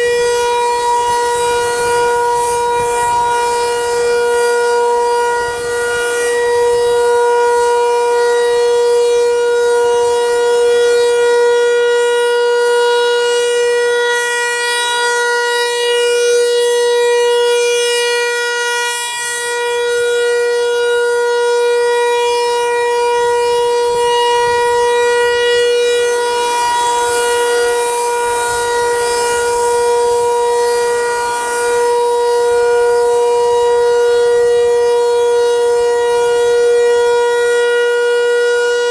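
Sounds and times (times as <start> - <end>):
rotating siren alert tone: 38.1 - 38.9.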